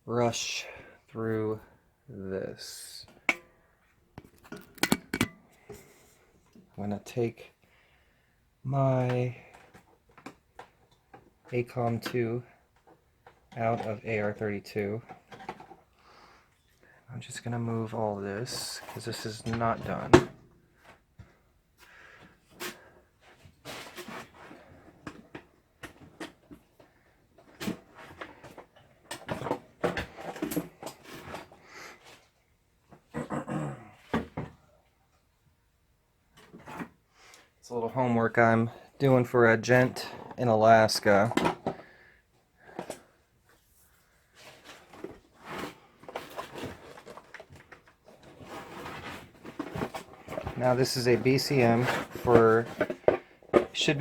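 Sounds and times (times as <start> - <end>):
tools clattering on workbench: 4.2 - 5.4
handling noise: 4.2 - 5.5.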